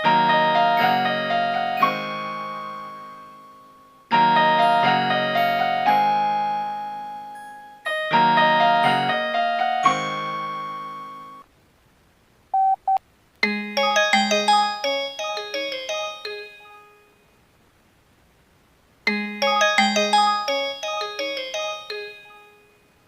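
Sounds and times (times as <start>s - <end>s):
short beeps: 12.6s - 13.0s
polyphonic ringtone: 13.5s - 17.2s, 19.1s - 22.8s.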